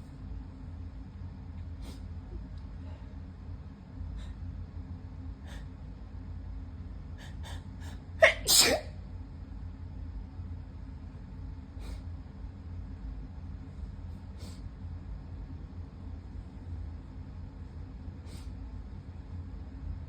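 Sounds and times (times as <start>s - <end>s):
person sneezing loudly: 8.2s - 8.9s
quiet sniffs: 14.4s - 14.7s, 18.3s - 18.6s.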